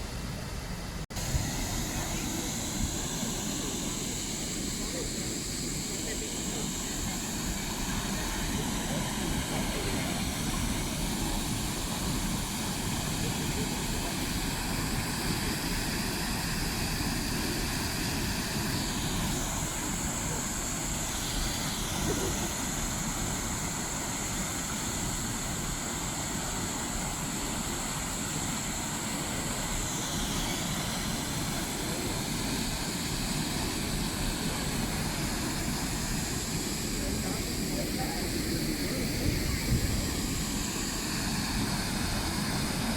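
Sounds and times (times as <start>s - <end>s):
waterfall rushing roar: 1.2s - 42.9s.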